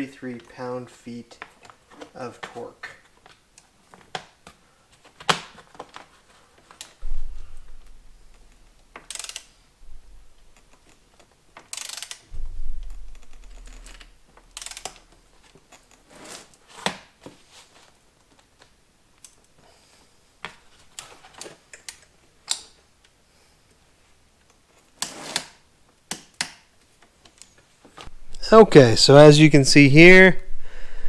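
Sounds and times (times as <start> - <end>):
knocks and bumps: 7.0 - 8.8, 12.3 - 14.6
ratchet wrench clicking: 9.0 - 9.5, 11.7 - 12.2, 12.8 - 15.1.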